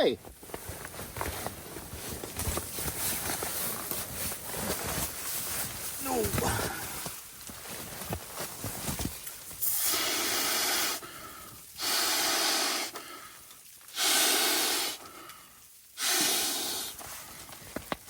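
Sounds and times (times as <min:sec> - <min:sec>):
person blowing forceful breaths: 0:09.6 - 0:17.6.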